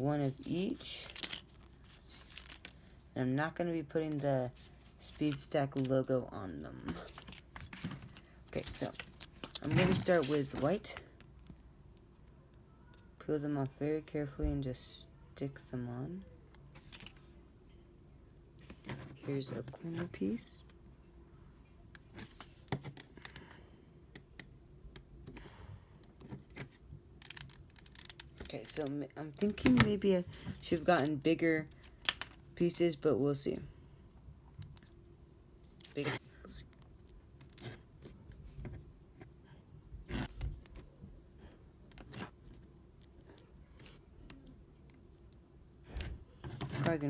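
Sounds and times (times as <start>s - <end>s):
stickers peeled and pressed: 27.2s - 29.8s.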